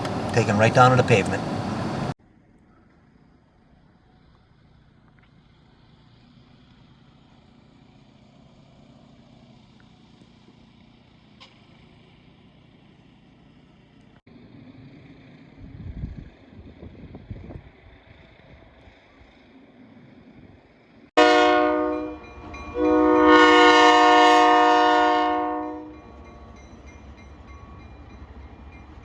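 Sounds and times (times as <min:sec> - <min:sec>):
engine and road noise inside car: 0:00.0 - 0:18.5.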